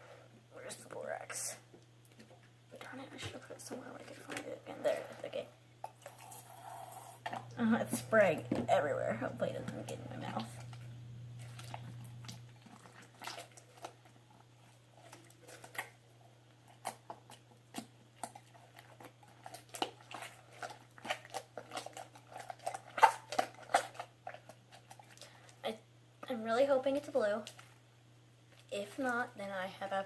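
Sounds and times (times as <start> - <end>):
hands squelching slime: 9.4 - 14.2, 16.6 - 25.3.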